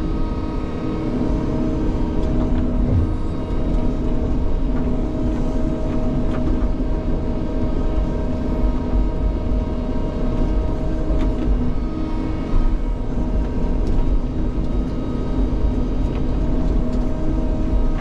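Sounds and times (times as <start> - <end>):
excavator diesel engine running: 2.5 - 5.0.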